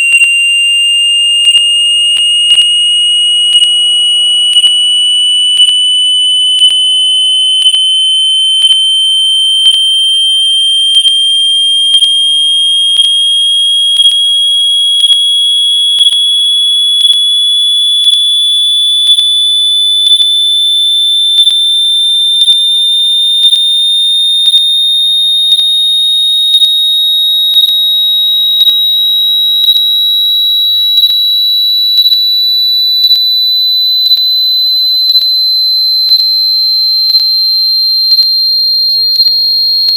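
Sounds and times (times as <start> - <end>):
rising electronic test tone: 0.0 - 20.0.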